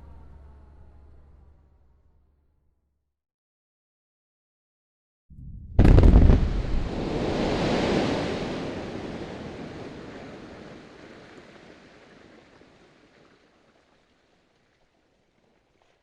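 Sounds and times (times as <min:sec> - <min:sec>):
blast rumbling: 0:05.4 - 0:10.9.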